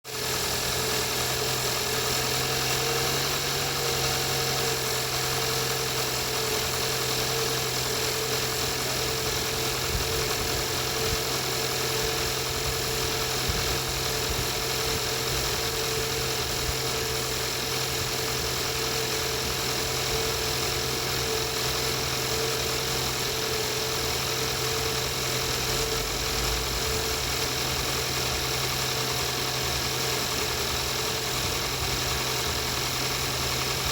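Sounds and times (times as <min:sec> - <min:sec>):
engine idling with knock: 0:00.1 - 0:33.9.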